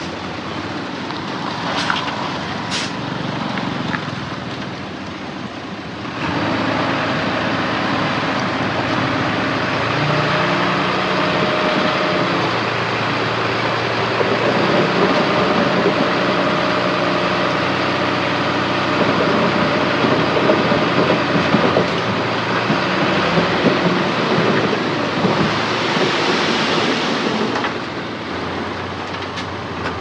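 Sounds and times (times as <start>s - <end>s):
diesel machinery engine hum: 0.0s - 30.0s
machinery clanking and rattling: 7.9s - 30.0s.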